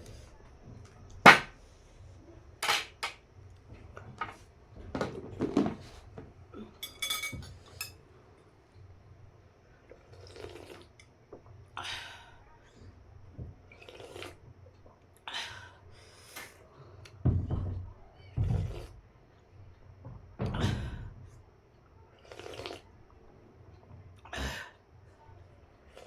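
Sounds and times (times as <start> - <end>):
dull thumps: 1.3 - 1.5
slurping soup: 10.0 - 11.0, 13.7 - 14.4, 22.2 - 22.9.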